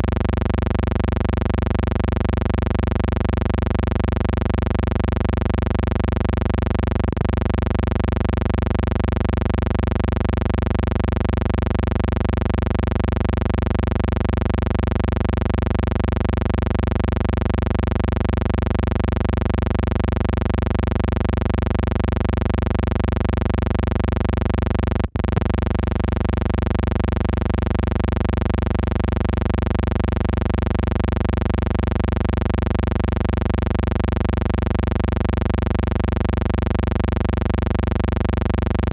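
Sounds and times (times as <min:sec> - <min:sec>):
steady hum with overtones: 0:00.0 - 0:38.9
low rumble: 0:25.1 - 0:31.8.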